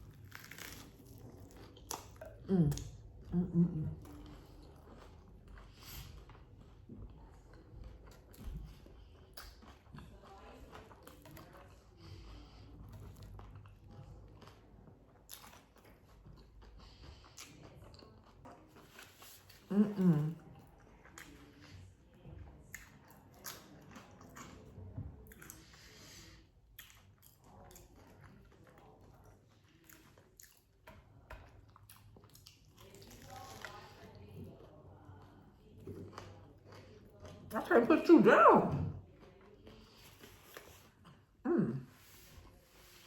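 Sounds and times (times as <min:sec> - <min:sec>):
person chewing crunchy food: 0:00.0 - 0:03.0, 0:04.0 - 0:19.7
faint chewing: 0:00.0 - 0:37.7, 0:39.0 - 0:43.0.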